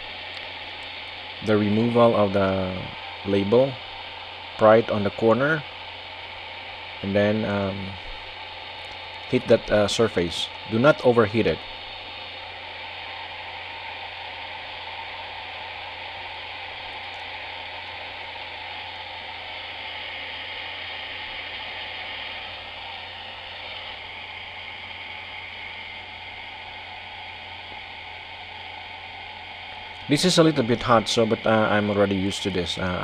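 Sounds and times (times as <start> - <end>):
hair dryer blowing: 0.0 - 33.0.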